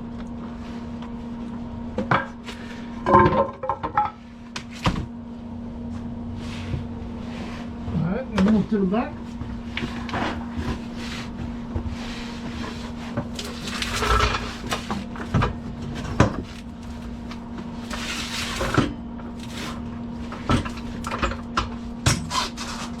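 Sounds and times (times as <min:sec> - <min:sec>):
steady electrical hum: 0:00.0 - 0:23.0.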